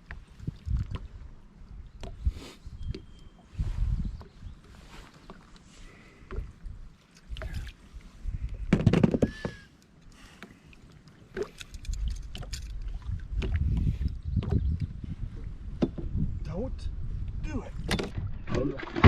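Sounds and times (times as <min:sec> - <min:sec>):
clicks and knocks in a boat: 0:08.4 - 0:15.0, 0:15.7 - 0:16.2, 0:17.8 - 0:19.0.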